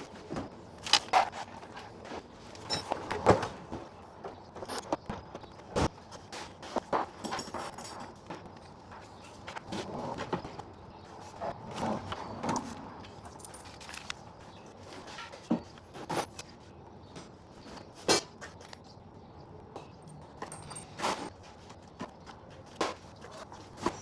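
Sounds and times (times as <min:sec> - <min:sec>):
tools clinking on a workbench: 0:07.2 - 0:08.4, 0:12.5 - 0:14.2, 0:19.9 - 0:21.3.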